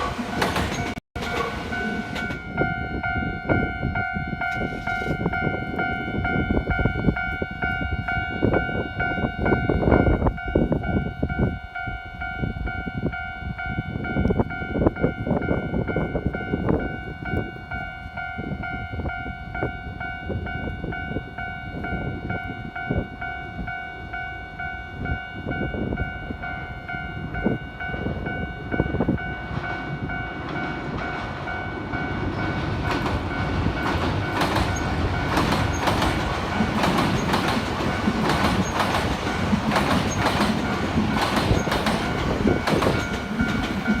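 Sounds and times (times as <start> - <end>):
train wheels clacking over rails: 0.0 - 2.8, 29.5 - 44.0
level crossing warning bell: 0.0 - 44.0.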